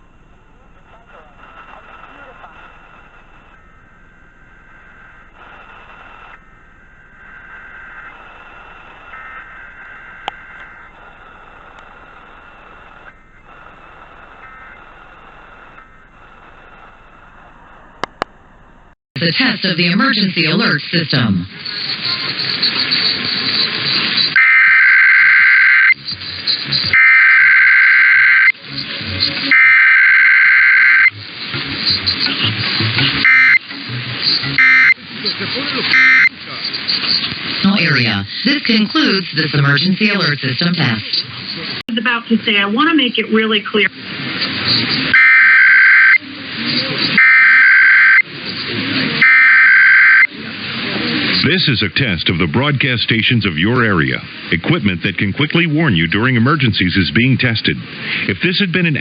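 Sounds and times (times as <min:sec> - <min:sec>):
faint steady tones: 0:00.0 - 0:59.0
radio static hiss: 0:00.0 - 0:59.0
harsh two-tone digital warbles: 0:31.8 - 0:33.6, 0:34.3 - 0:36.3.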